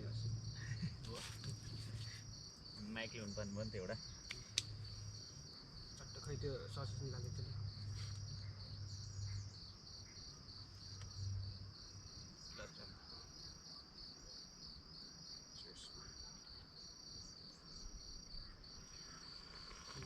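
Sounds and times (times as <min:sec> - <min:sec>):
insects chirping: 0:00.0 - 0:20.0.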